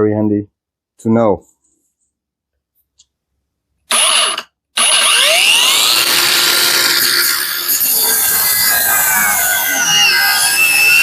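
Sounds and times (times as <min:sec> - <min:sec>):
angle grinder whining: 0:03.9 - 0:11.0.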